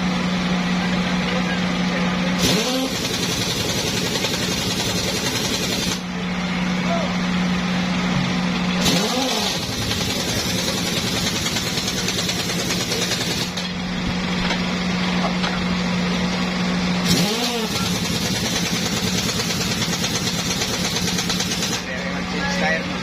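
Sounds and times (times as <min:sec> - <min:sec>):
steady engine hum: 0:00.0 - 0:23.0
impact wrench running: 0:02.4 - 0:06.1, 0:08.8 - 0:13.8, 0:17.0 - 0:22.0.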